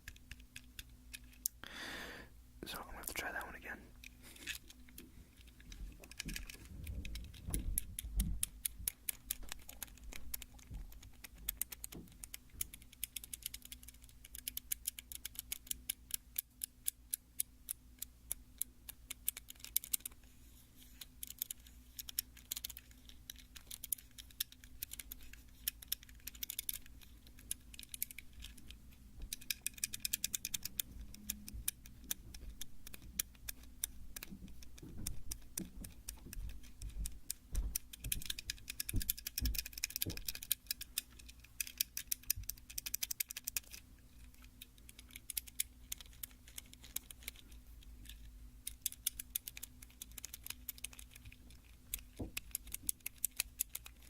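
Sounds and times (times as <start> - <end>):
light tapping and clicking on toy car: 0.0 - 1.6, 2.8 - 54.0.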